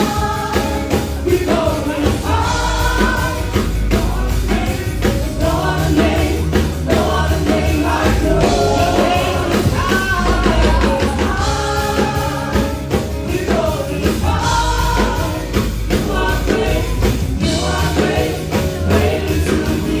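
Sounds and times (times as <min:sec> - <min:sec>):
bass line: 0:00.0 - 0:20.0
drums keeping a beat: 0:00.0 - 0:20.0
gospel choir singing: 0:00.0 - 0:20.0.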